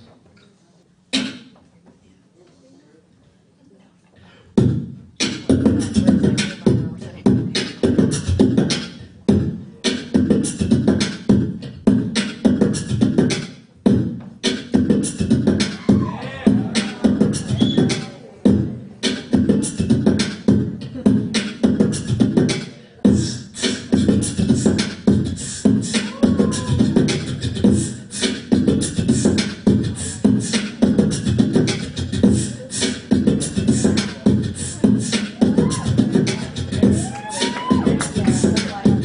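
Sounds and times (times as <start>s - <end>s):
beatboxed percussion: 1.1s - 1.6s, 4.4s - 39.0s
looped vocal drone: 14.5s - 37.1s.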